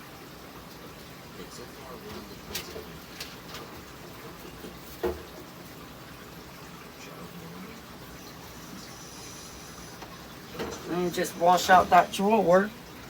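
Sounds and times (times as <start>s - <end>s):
steady hiss: 7.1s - 13.0s.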